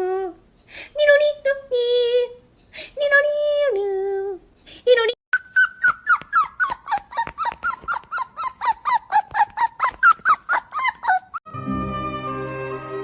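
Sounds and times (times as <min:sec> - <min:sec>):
small dog yapping: 0:05.4 - 0:11.4.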